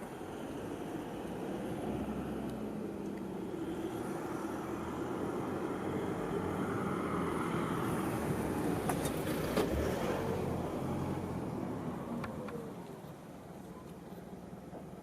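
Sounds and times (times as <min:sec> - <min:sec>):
street noise: 0:00.0 - 0:15.0.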